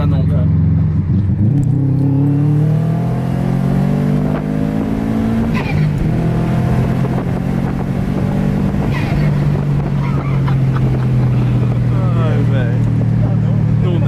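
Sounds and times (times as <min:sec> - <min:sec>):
car engine accelerating: 0:00.0 - 0:14.0
gear change chirp: 0:04.3 - 0:13.1.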